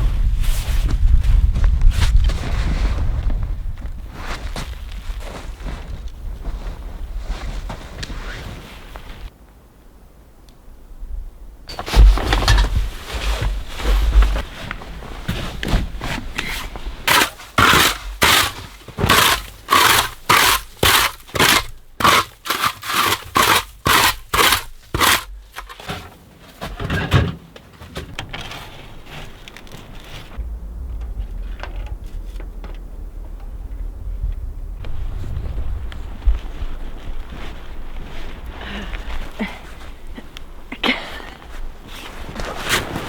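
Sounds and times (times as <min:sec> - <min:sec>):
wind rumble on microphone: 0:00.0 - 0:17.1, 0:28.2 - 0:40.7
rhythmic scraping strokes: 0:17.1 - 0:25.9.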